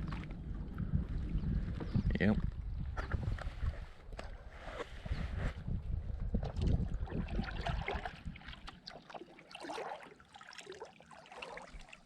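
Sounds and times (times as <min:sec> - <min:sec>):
water splashing and lapping: 0:00.0 - 0:01.8, 0:06.2 - 0:12.0
wind buffeting microphone: 0:00.0 - 0:08.7.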